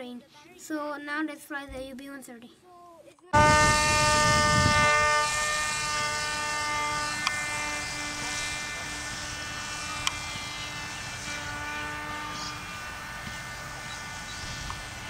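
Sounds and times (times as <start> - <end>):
wind rumbling on microphone: 3.4 - 11.2
model airplane motor whining: 3.4 - 15.0
sharp clicks: 14.6 - 14.9.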